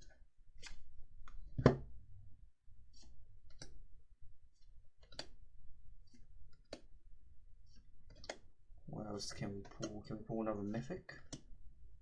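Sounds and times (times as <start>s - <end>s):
cards snapping and clicking: 0.6s - 1.4s, 5.0s - 5.4s, 8.1s - 8.4s.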